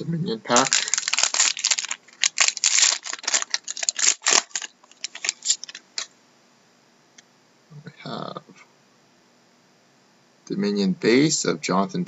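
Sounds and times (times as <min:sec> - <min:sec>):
wrapper tearing and crinkling: 0:00.5 - 0:06.1.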